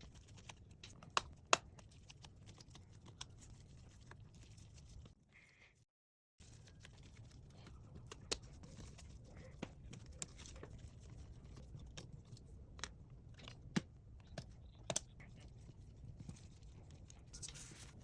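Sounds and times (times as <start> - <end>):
small tools clicking and tapping: 12.7 - 15.3.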